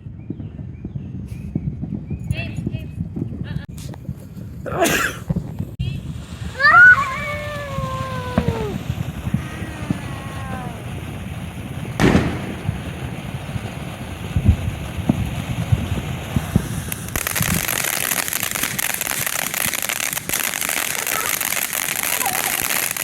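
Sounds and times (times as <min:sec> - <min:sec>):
firework crackling: 0:05.2 - 0:23.0
firework bang: 0:05.3 - 0:23.0
firework pops: 0:07.8 - 0:23.0.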